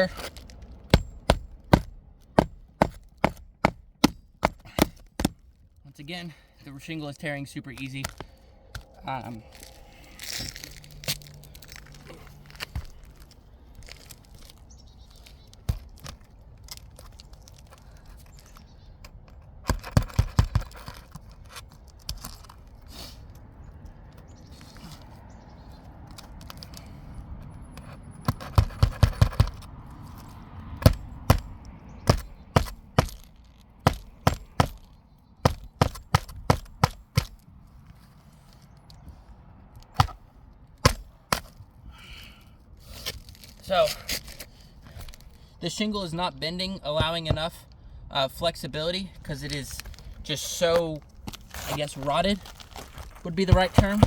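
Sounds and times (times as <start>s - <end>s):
hammer striking nails: 0.9s - 5.5s, 19.7s - 21.0s, 28.2s - 29.6s, 30.8s - 37.4s, 40.0s - 40.2s, 40.8s - 41.5s, 53.4s - 54.0s.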